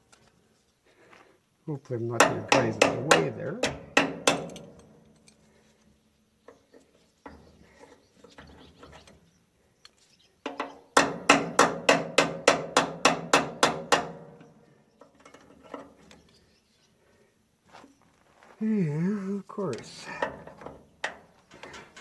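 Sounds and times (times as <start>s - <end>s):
hammer striking metal chain: 2.2s - 4.8s
tools and parts clinking: 2.4s - 5.5s, 20.1s - 22.0s.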